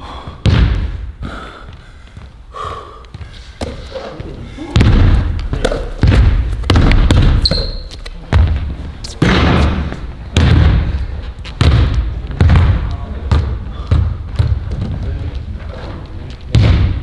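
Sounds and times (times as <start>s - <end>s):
ball bouncing on hard floor: 3.1s - 17.0s
short high squeak: 7.4s - 7.9s.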